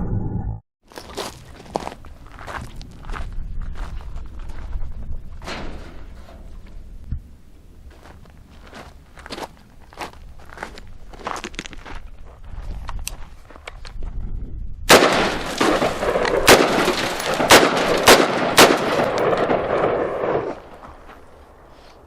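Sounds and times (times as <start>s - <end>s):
rifle shots: 14.9s - 20.8s.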